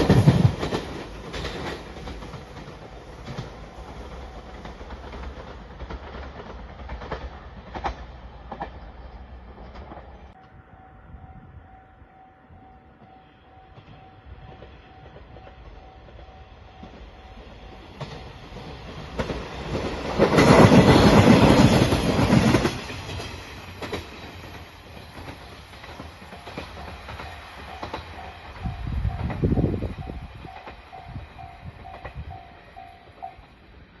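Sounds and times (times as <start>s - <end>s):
wheels clacking over rails: 0.0s - 10.2s, 14.6s - 33.5s
train passing: 0.0s - 34.0s
crossing warning bell: 10.2s - 18.6s, 25.2s - 33.6s.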